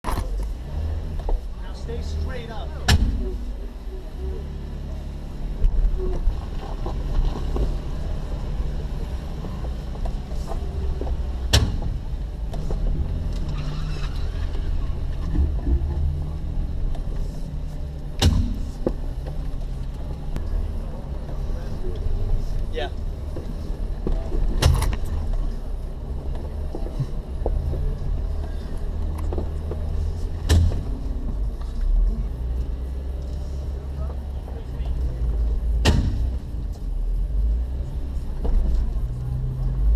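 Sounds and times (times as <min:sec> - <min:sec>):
vehicle engine running: 0:00.0 - 0:39.9
car popping: 0:02.8 - 0:03.7, 0:09.4 - 0:17.2, 0:18.0 - 0:20.6, 0:23.3 - 0:31.6, 0:35.8 - 0:36.8
sharp pop: 0:35.8 - 0:36.3.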